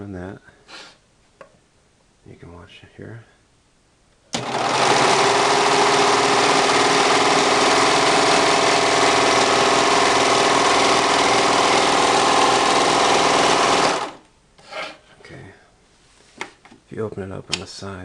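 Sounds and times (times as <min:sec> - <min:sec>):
serger sewing machine humming: 0:04.4 - 0:14.3.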